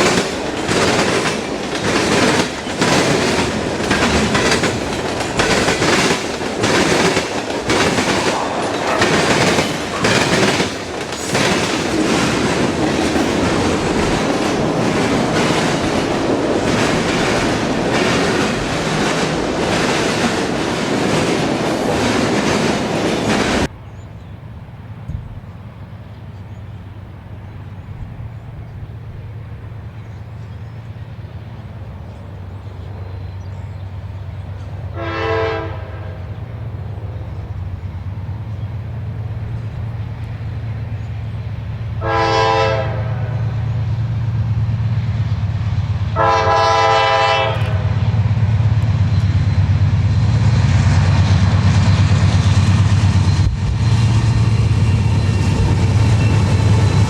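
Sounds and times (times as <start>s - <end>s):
train engine rumble: 0.0s - 57.0s
train horn blasts: 34.9s - 36.5s, 42.0s - 43.8s, 46.2s - 48.2s.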